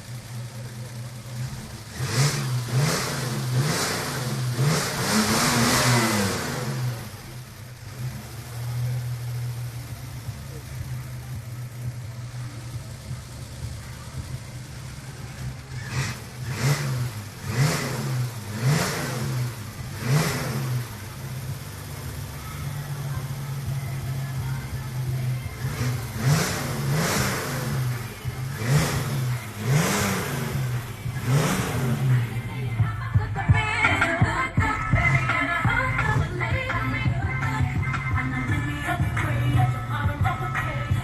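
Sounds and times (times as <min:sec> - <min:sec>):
car engine idling: 0:00.0 - 0:41.0
engine revving sharply: 0:01.0 - 0:11.8, 0:13.0 - 0:32.8.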